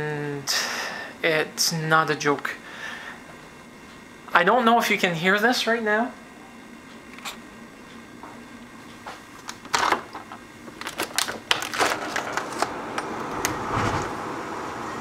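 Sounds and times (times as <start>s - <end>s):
wind gust with low rumble: 12.7s - 15.0s.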